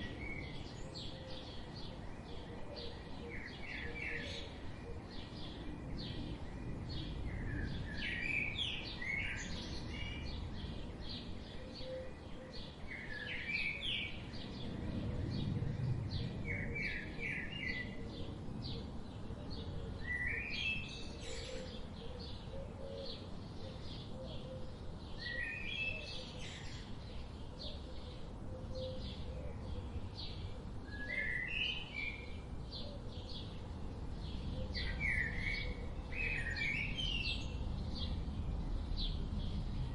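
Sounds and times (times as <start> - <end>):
songbirds singing: 0.0 - 39.9
low outdoor rumble: 14.2 - 17.2, 37.4 - 39.9.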